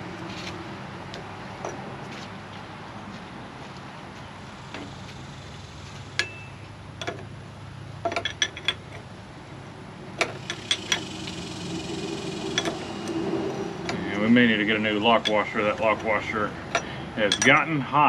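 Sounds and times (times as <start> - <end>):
metal hardware clinking: 6.2 - 7.3, 8.0 - 9.1, 10.2 - 17.7.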